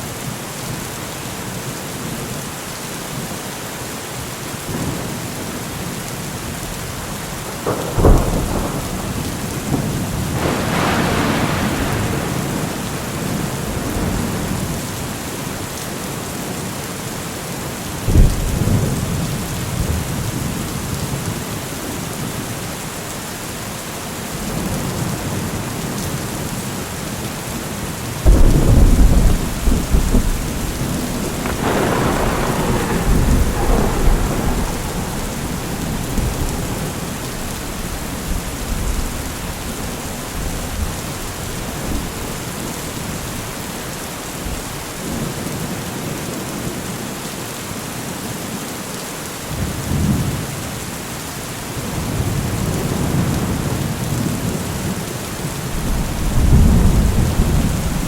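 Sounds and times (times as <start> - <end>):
heavy rain: 0.0 - 58.0
thunder rumbling: 4.7 - 15.0, 18.0 - 21.4, 28.2 - 43.6, 55.6 - 58.0.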